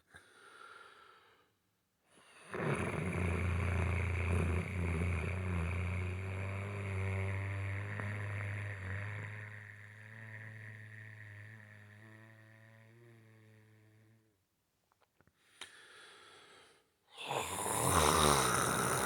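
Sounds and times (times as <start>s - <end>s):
person snoring: 2.4s - 14.2s, 17.2s - 19.0s.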